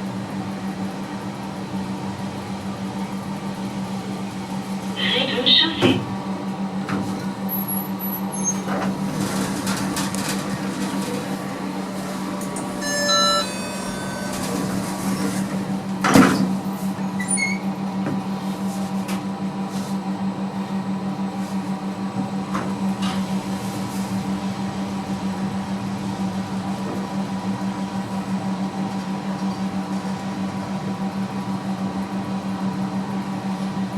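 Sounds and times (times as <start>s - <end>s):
electronic tones: 12.8s - 14.9s.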